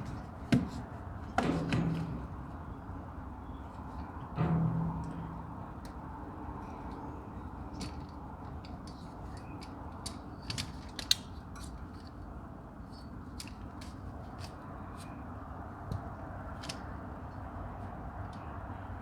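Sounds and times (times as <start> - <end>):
hand tools and metal clinking: 1.4 - 2.7.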